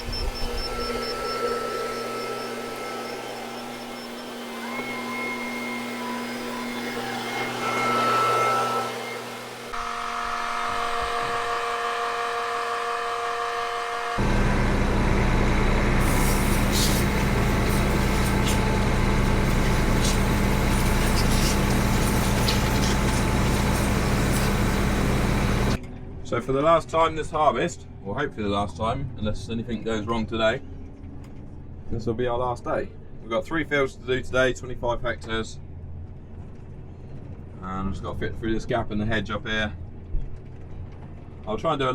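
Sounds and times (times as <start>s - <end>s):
diesel engine running: 0.0s - 25.8s
machine hum: 0.0s - 25.8s.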